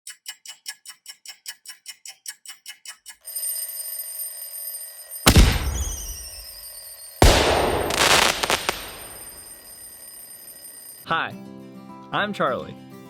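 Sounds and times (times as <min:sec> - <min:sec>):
alarm clock ringing: 0:09.2 - 0:11.1.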